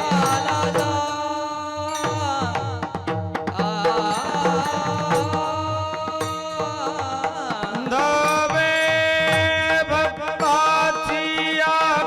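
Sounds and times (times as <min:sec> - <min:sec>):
mridang drum beating: 0:00.0 - 0:12.0
person singing: 0:00.0 - 0:12.0.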